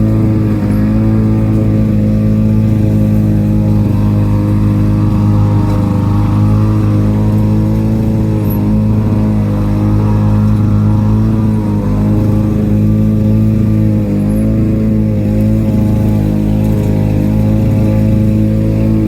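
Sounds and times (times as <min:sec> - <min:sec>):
lawn mower engine running: 0:00.0 - 0:19.0.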